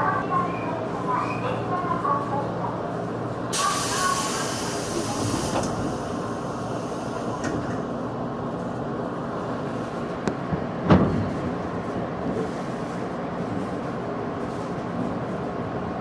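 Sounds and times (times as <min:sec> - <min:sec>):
electric train running rumble: 0:02.4 - 0:16.0
air hiss: 0:03.6 - 0:07.2.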